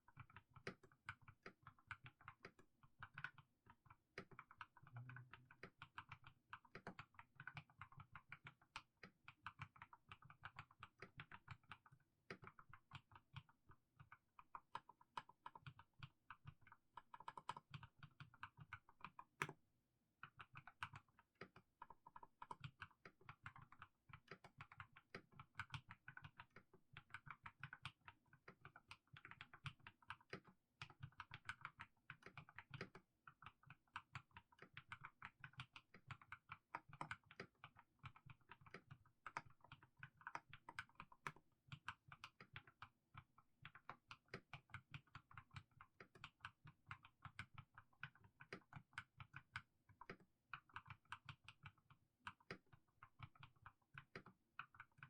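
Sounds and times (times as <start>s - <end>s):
mechanical keyboard typing: 20.3s - 55.0s.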